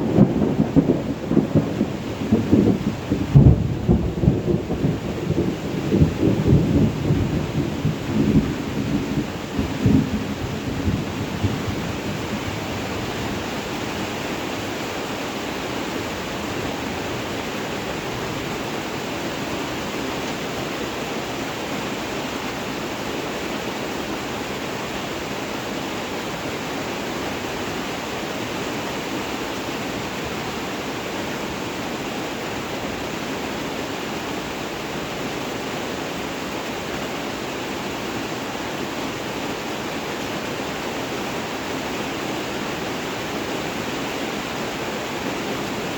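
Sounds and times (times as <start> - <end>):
thunder rumble: 0.0 - 13.4
steady rain falling: 0.0 - 45.9.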